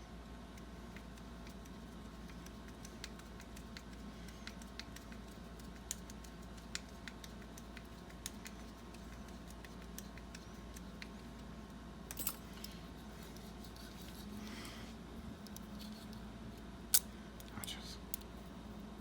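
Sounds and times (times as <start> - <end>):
metallic clicks of lock parts: 12.1 - 12.5.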